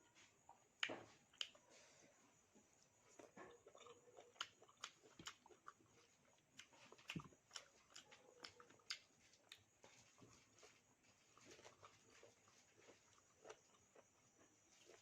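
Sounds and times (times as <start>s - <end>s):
chewing with wet mouth clicks: 0.5s - 1.6s, 3.1s - 9.7s, 11.3s - 14.2s.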